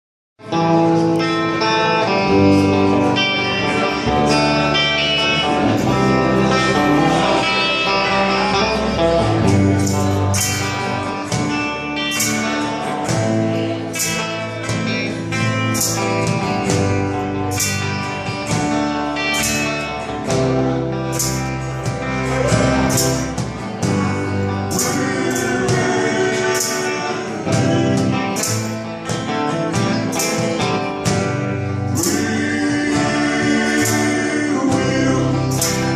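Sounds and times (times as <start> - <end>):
guitar: 0.4 - 35.9
person singing: 1.3 - 14.3, 22.0 - 35.9.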